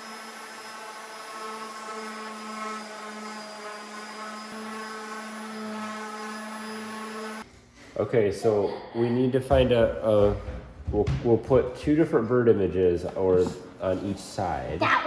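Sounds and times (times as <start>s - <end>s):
small electric motor whining: 0.0s - 7.4s.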